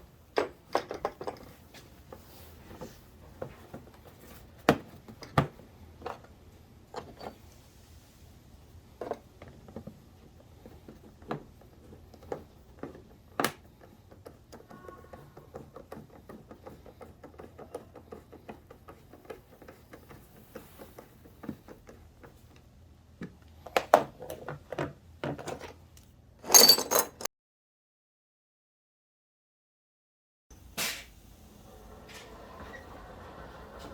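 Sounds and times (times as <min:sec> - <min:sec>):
tools and parts clicking: 0:00.3 - 0:01.6, 0:25.4 - 0:27.3.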